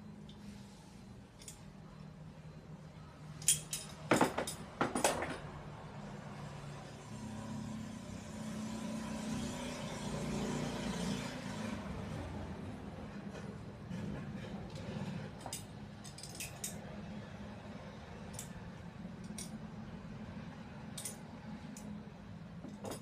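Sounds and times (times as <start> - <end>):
washing machine spin motor whirring: 5.7 - 15.5.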